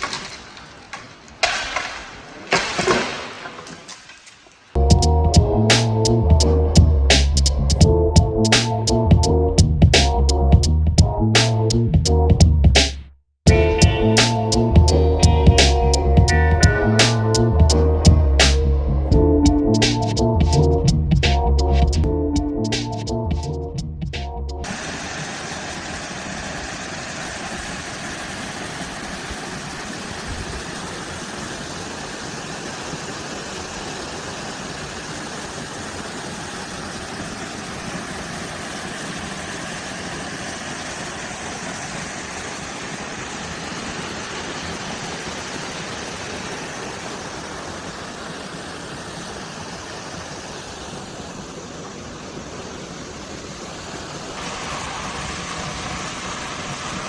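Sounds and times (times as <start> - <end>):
waterfall rushing: 24.6 - 57.0.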